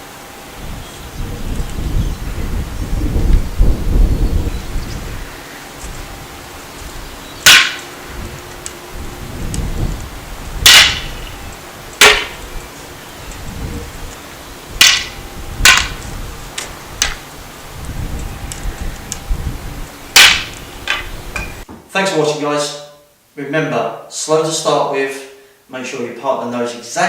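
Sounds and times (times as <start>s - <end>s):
cane striking target: 7.4s - 7.9s, 10.7s - 11.2s, 12.0s - 12.4s, 14.8s - 16.0s.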